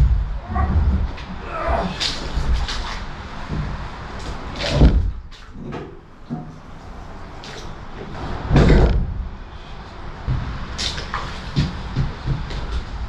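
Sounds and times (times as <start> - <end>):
heavy thumps: 4.6 - 5.4, 8.2 - 9.5.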